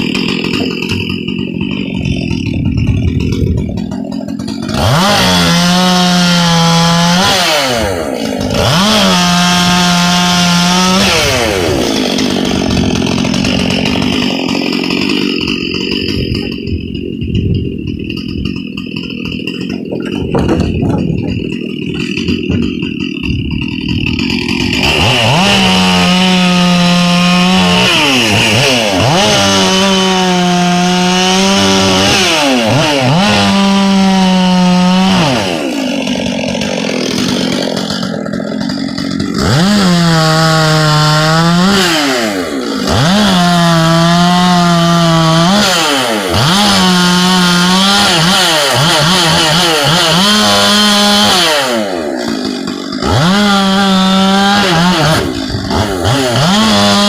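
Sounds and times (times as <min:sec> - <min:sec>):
chainsaw cutting wood: 0:00.0 - 0:57.0.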